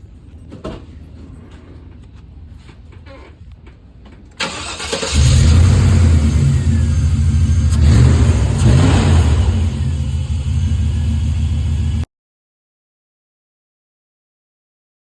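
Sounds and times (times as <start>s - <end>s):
car engine cranking and idling: 4.3s - 12.1s.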